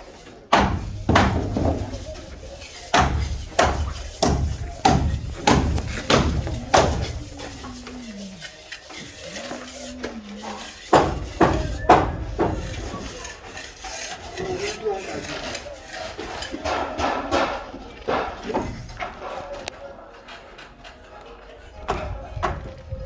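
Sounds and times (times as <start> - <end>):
hand tools striking hard material: 0.0 - 19.8, 20.6 - 22.9.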